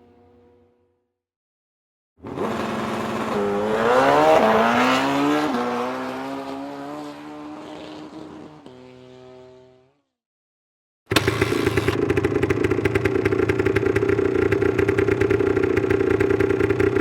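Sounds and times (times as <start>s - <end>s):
car engine accelerating hard: 2.2s - 9.5s.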